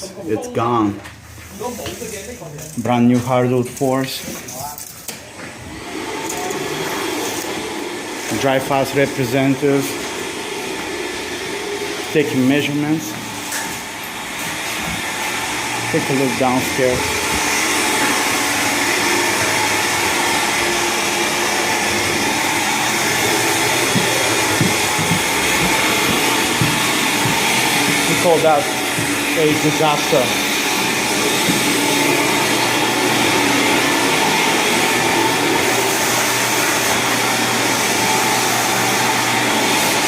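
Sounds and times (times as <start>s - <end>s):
blower motor whirring: 5.3s - 40.0s
loud rushing noise: 15.1s - 40.0s.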